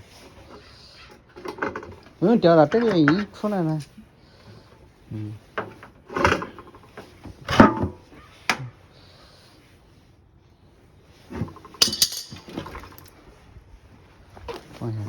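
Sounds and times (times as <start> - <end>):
washing machine parts knocking: 5.6 - 8.6, 11.3 - 13.0.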